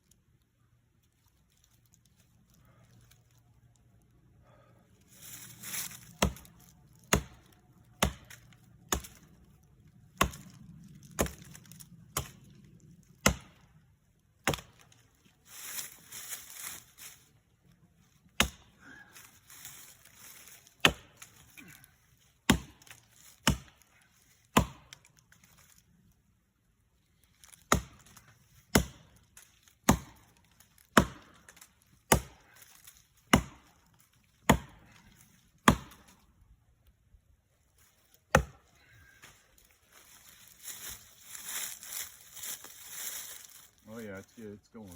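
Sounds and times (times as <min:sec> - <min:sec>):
axe chopping into tree: 0:05.9 - 0:09.3, 0:10.1 - 0:12.5, 0:13.2 - 0:13.7, 0:14.4 - 0:15.0, 0:18.3 - 0:18.8, 0:20.7 - 0:21.8, 0:22.4 - 0:23.9, 0:24.5 - 0:25.4, 0:27.4 - 0:29.2, 0:29.8 - 0:36.2, 0:38.2 - 0:38.7.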